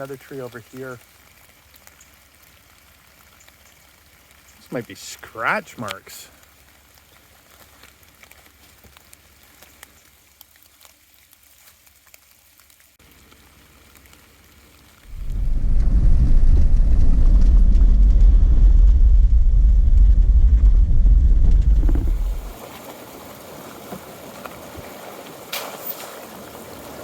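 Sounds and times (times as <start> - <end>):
light rain pattering: 0.0 - 20.9, 21.5 - 27.0
loud low steady rumble: 15.1 - 22.5.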